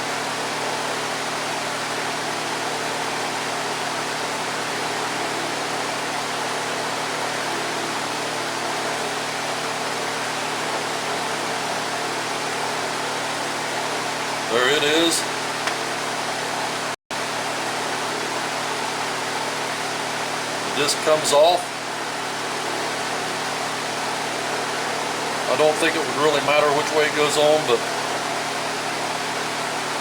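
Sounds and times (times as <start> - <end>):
electric fan running: 0.0 - 30.0.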